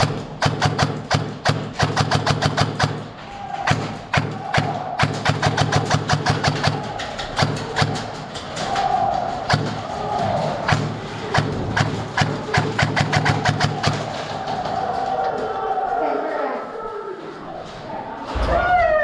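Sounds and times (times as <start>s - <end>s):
percussive music with wood-block clicks: 0.0s - 15.4s.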